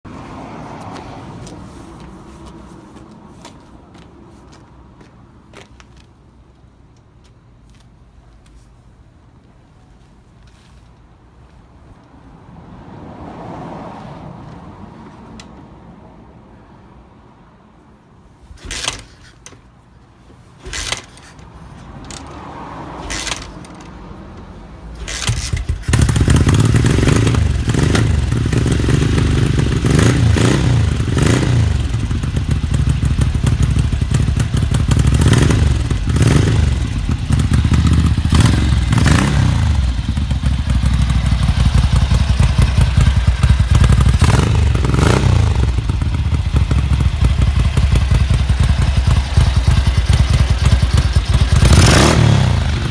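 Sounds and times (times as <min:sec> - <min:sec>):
motorcycle kick-starting: 0:18.6 - 0:19.5, 0:20.6 - 0:22.4, 0:23.0 - 0:52.9
motorcycle engine revving: 0:25.0 - 0:52.9.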